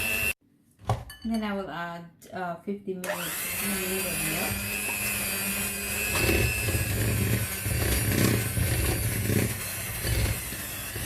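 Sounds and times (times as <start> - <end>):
electric hand mixer beating dough: 0.0 - 0.4, 3.1 - 11.0.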